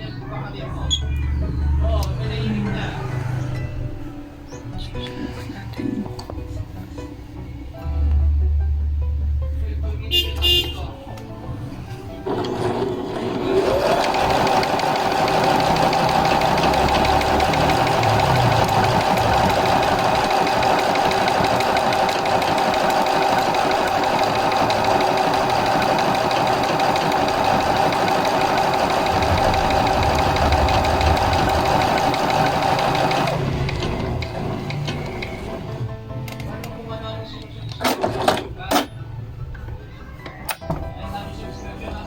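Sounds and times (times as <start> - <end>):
sewing machine motor whining: 12.3 - 35.8.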